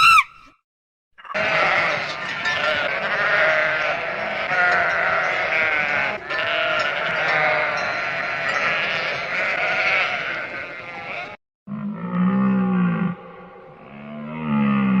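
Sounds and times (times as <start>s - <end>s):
flock of farm animals calling: 0.0s - 0.5s, 1.2s - 11.4s.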